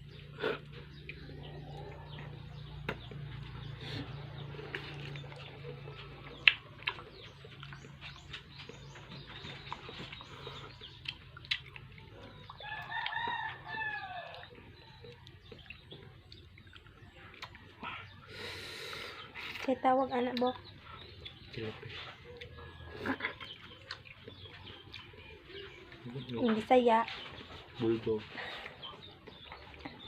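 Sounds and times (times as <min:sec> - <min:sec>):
rooster crowing: 0:12.6 - 0:14.4.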